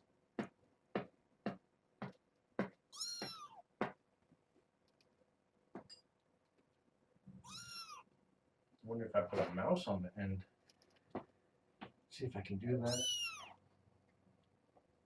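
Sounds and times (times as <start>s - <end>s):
kitten meow: 2.9s - 3.6s, 7.4s - 8.1s, 12.9s - 13.6s.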